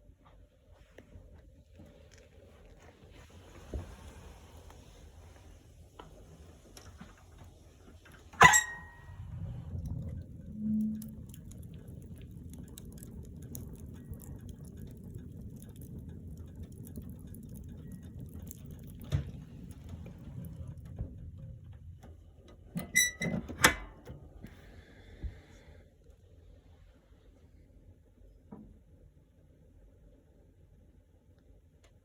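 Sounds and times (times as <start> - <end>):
low steady rumble: 0.0 - 32.0
wood fire crackling in a stove: 0.0 - 32.0.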